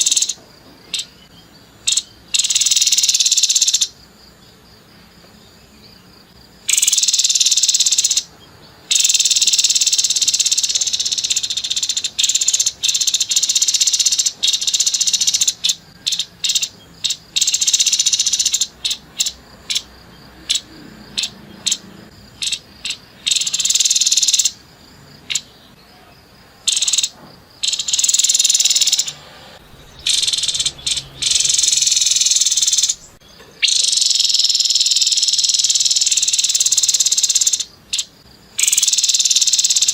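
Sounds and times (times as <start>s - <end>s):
bird rasping rattling calls: 8.9s - 24.6s, 26.7s - 39.9s.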